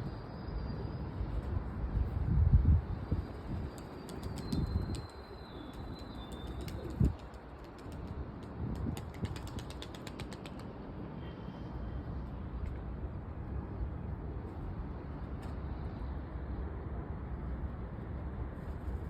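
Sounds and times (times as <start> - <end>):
pigeon wings clapping: 3.7 - 10.8.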